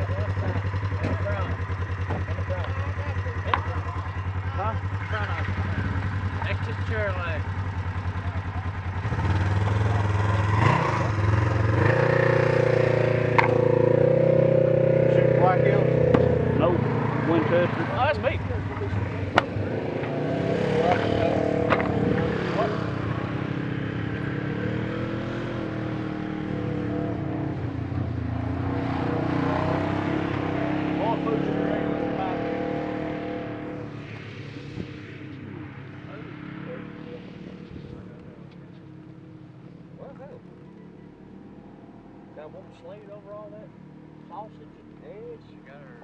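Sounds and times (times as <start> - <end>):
motor engine running: 0.0 - 10.5
engine running steadily: 0.0 - 34.1.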